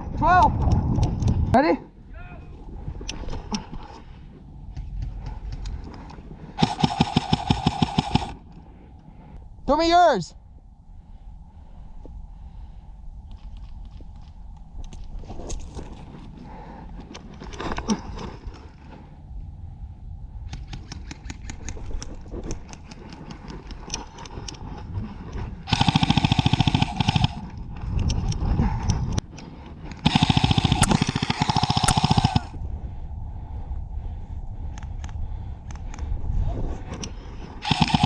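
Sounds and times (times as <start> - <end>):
airsoft rifle full-auto bursts: 6.6 - 8.4, 25.7 - 27.4, 30.0 - 32.6, 37.6 - 38.0.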